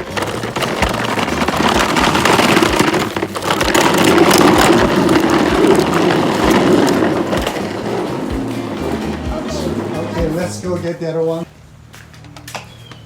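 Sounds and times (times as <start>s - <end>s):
small motor grinding and rattling: 0.0s - 10.4s.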